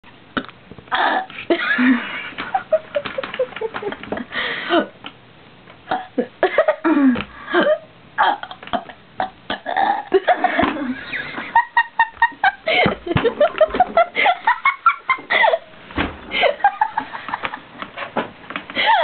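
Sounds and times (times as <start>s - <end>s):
girl burping: 5.9s - 6.3s, 8.2s - 10.2s.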